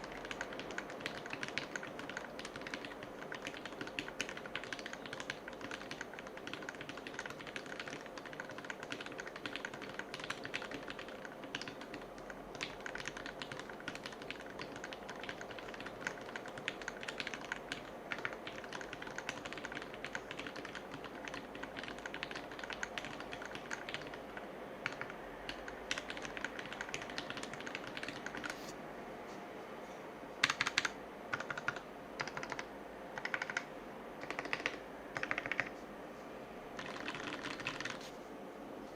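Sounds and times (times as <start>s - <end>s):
mechanical keyboard typing: 0.0s - 28.6s, 30.4s - 35.7s, 36.8s - 38.1s.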